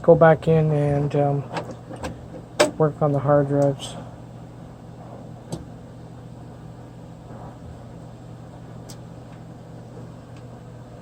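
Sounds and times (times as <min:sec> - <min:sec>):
low electrical hum: 0:00.0 - 0:11.0.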